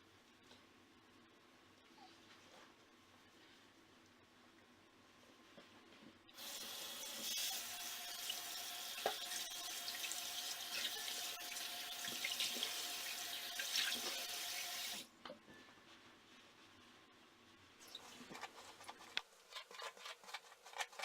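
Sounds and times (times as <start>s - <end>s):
tap water running into sink: 6.4s - 15.0s.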